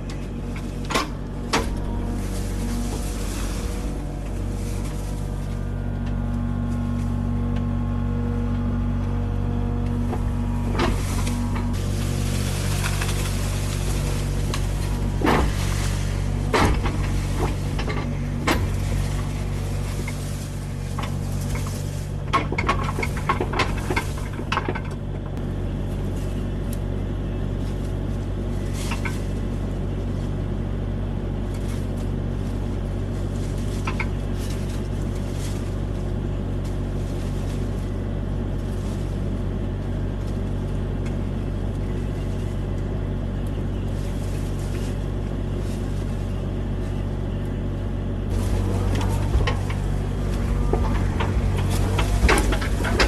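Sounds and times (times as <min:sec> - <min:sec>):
diesel engine running: 0:00.0 - 0:53.0
metal clanks and knocks: 0:10.0 - 0:25.4, 0:48.3 - 0:53.0.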